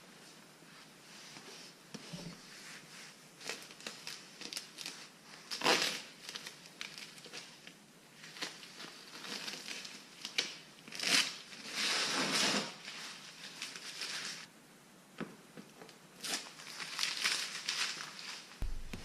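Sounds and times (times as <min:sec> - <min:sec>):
crinkling and rustling: 0:15.6 - 0:19.0.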